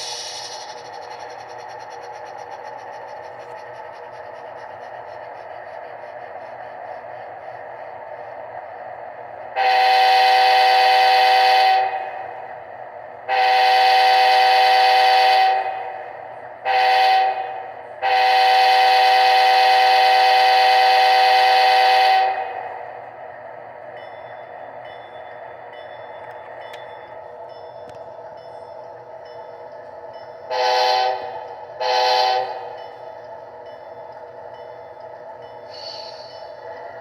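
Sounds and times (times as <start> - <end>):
locomotive engine running: 0.0 - 37.0
model train diesel horn: 9.6 - 12.2, 13.3 - 16.0, 16.6 - 22.8, 30.5 - 32.9.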